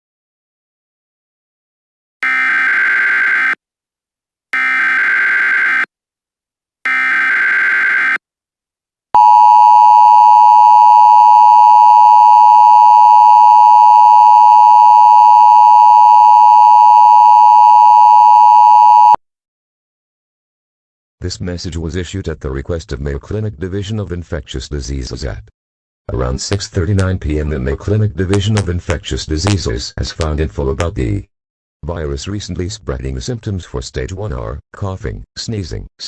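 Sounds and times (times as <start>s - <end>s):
loud steady attention tone: 9.2s - 19.2s.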